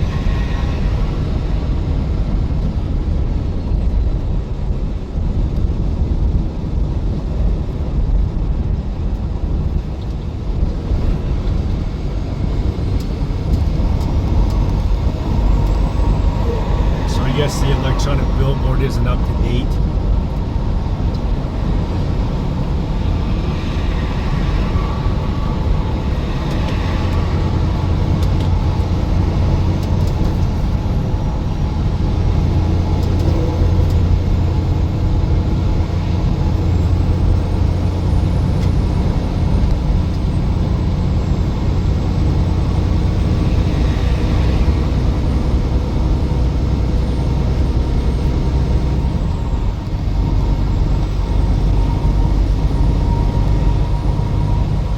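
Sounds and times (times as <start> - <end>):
engine and tyre drone: 0.0 - 54.9
wind and road hiss: 10.5 - 36.3.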